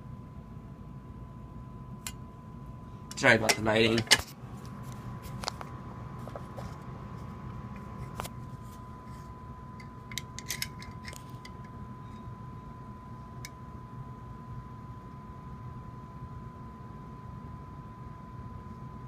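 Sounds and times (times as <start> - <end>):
faint steady hum: 0.0 - 19.0
mechanism clicks and taps: 9.8 - 11.8.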